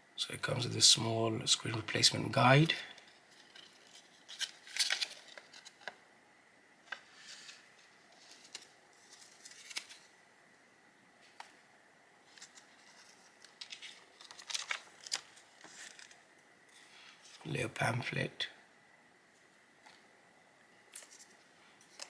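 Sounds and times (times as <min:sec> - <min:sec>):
paper and plastic rustling: 0:01.7 - 0:06.0, 0:06.8 - 0:10.1, 0:12.2 - 0:17.5, 0:20.9 - 0:22.0.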